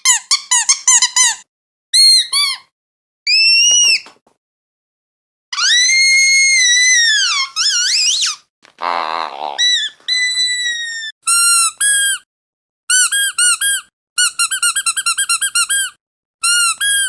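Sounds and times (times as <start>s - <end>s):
squeaky dog toy squeaking: 0.0s - 2.7s, 3.3s - 4.1s, 5.6s - 8.4s, 9.6s - 12.2s, 12.9s - 17.0s.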